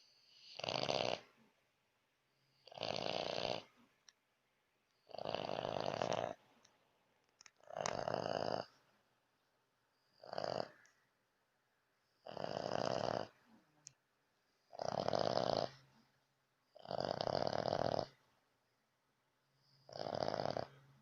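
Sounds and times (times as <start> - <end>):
dog snoring loudly: 0.3 - 1.3, 2.6 - 3.7, 5.1 - 6.4, 7.7 - 8.7, 10.2 - 10.8, 12.2 - 13.4, 14.7 - 15.8, 16.8 - 18.2, 19.9 - 20.8.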